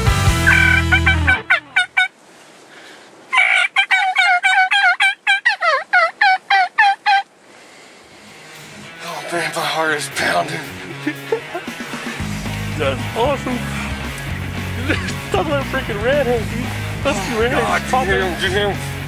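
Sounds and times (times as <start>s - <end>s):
turkey calling: 0.3s - 2.2s, 3.3s - 7.3s.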